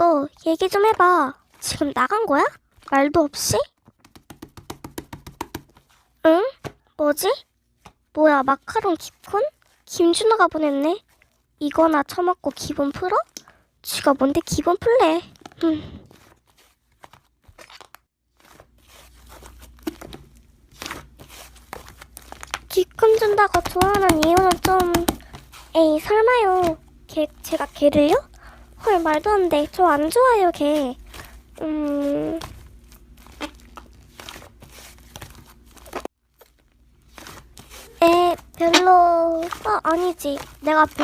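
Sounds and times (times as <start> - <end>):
slime squished by hand: 31.1 - 41.0.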